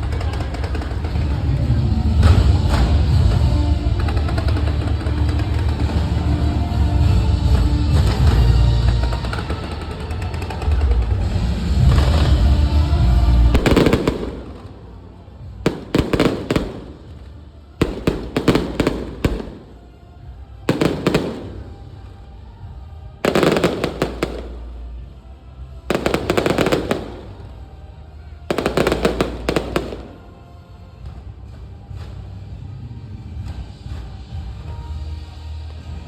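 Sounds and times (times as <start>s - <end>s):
fireworks bursting and crackling: 0.0s - 22.3s, 23.2s - 25.2s, 25.8s - 30.6s
music: 0.0s - 36.0s.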